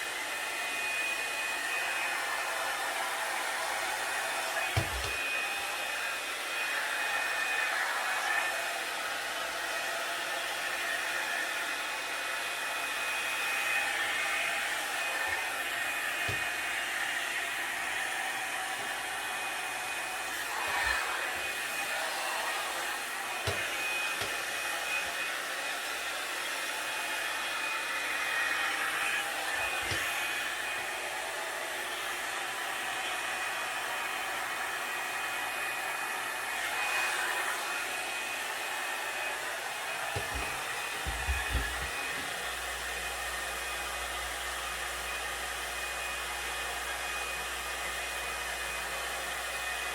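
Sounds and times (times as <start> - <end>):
blow dryer brush running: 0.0 - 49.9
soft knocks of brush in hair: 4.6 - 5.5, 14.8 - 17.7, 20.2 - 26.2, 28.8 - 30.5, 40.0 - 42.6.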